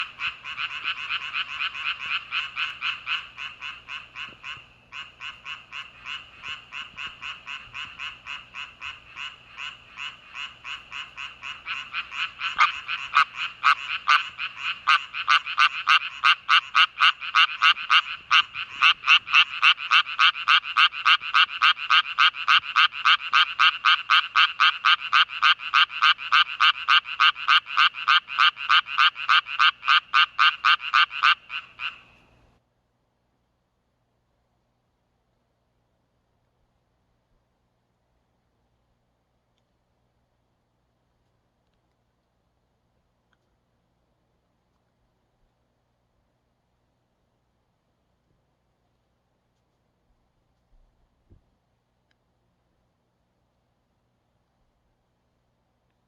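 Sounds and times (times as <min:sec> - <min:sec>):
tree frogs croaking: 0:00.0 - 0:32.4.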